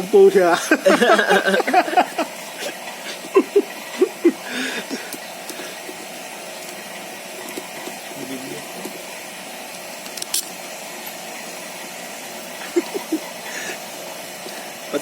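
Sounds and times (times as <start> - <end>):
vacuum pump running: 0.0 - 15.0.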